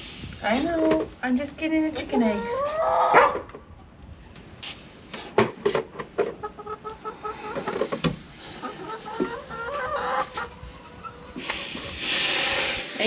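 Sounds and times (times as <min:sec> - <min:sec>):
chickens clucking: 0:00.1 - 0:13.0
rustling: 0:07.6 - 0:13.0.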